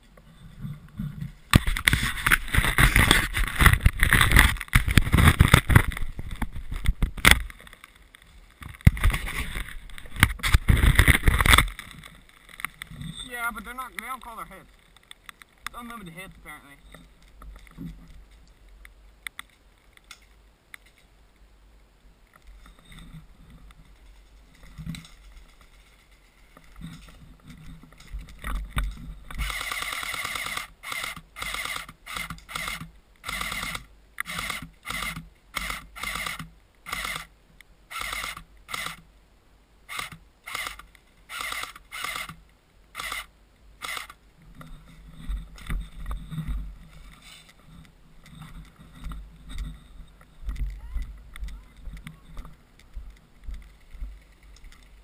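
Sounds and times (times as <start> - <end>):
quiet rustling: 0.0 - 39.2, 39.9 - 55.0
airsoft gun automatic bursts: 29.4 - 37.3, 37.9 - 39.0, 39.9 - 42.4, 43.0 - 44.2.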